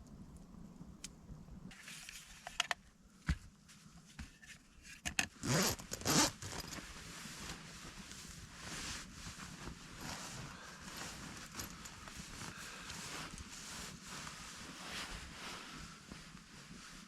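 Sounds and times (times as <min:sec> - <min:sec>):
small clicks and rustles: 0:00.0 - 0:17.0
zipper pulled: 0:05.4 - 0:06.8, 0:10.0 - 0:13.4.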